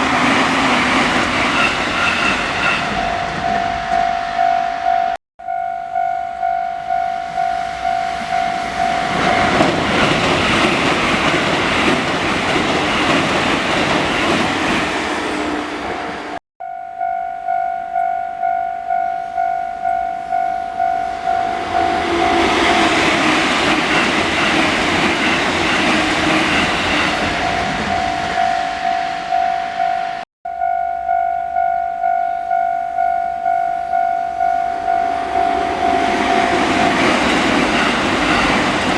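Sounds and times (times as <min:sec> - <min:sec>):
train passing with rolling wheels: 0:00.0 - 0:05.2, 0:06.4 - 0:16.4, 0:20.3 - 0:30.2, 0:34.3 - 0:38.9
level-crossing warning bell ringing: 0:00.0 - 0:13.3, 0:16.6 - 0:38.9.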